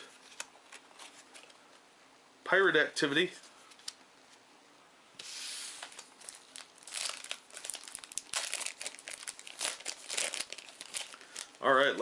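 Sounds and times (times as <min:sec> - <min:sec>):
wrapper crinkling and tearing: 0:05.8 - 0:11.6.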